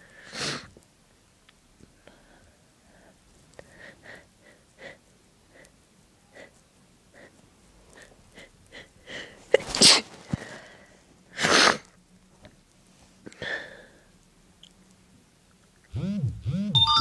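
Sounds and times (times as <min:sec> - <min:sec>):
person sneezing: 0:09.5 - 0:10.3, 0:11.4 - 0:11.9.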